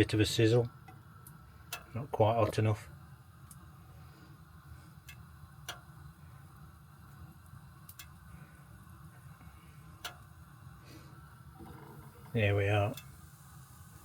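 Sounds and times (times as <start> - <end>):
low steady hum: 0.0 - 14.0
oil popping in frying pan: 3.2 - 3.8, 4.4 - 14.0.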